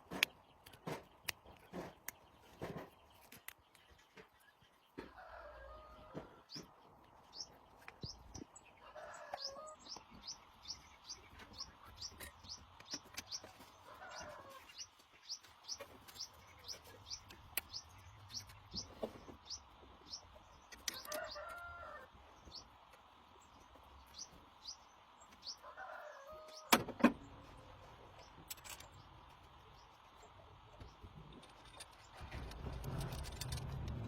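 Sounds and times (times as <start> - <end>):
small bird chirping: 6.4 - 26.7.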